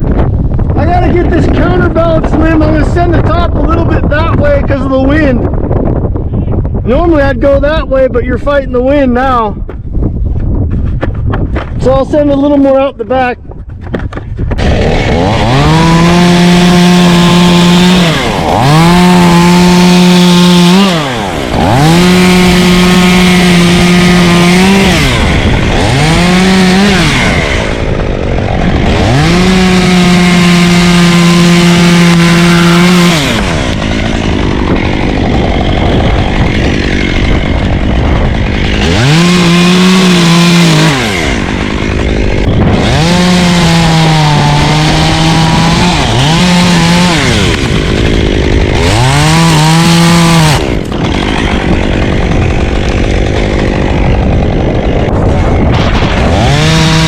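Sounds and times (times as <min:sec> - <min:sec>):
chainsaw cutting at high revs: 0:13.9 - 0:57.0.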